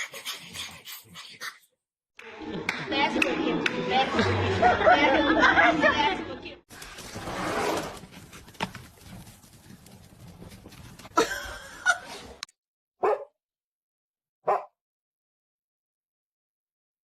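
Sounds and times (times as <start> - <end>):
dog barking: 13.0 - 13.4, 14.4 - 14.8.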